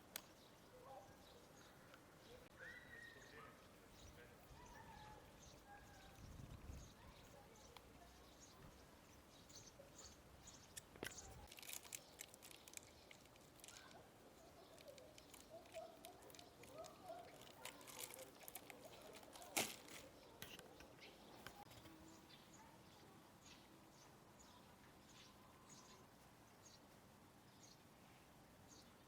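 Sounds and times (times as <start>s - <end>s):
faint clicks and ticks: 10.7s - 21.9s.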